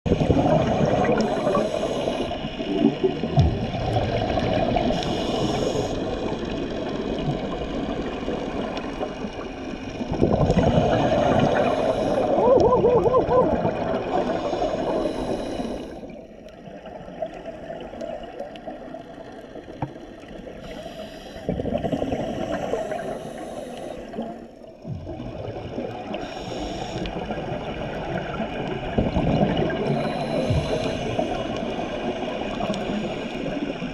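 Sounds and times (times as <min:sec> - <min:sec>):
bubbles gurgling: 0:00.1 - 0:15.2, 0:21.5 - 0:23.4, 0:24.2 - 0:26.5, 0:27.1 - 0:33.9
regulator hisses: 0:04.9 - 0:06.1.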